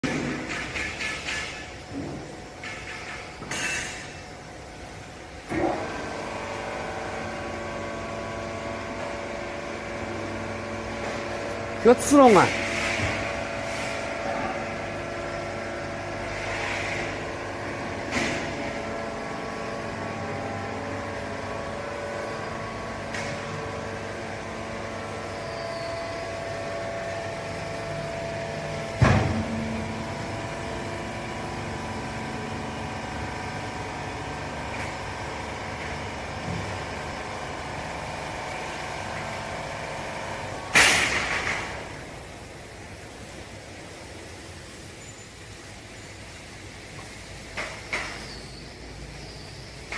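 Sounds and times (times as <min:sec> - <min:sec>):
loud metal clank: 0:00.0 - 0:04.2, 0:29.0 - 0:29.8, 0:40.7 - 0:41.8.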